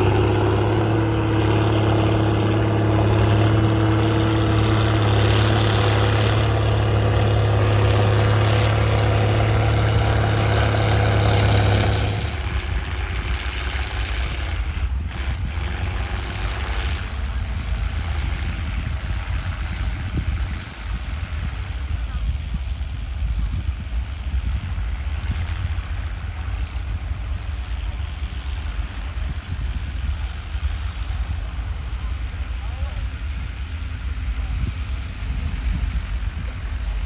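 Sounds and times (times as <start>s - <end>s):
tractor diesel engine running: 0.0s - 22.2s.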